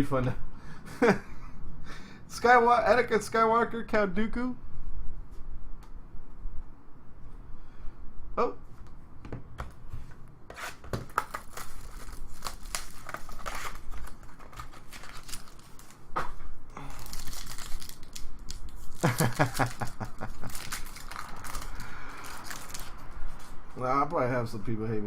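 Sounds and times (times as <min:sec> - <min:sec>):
cards being handled: 0:10.5 - 0:16.4
wrapper tearing and crinkling: 0:11.0 - 0:16.1, 0:16.8 - 0:23.2.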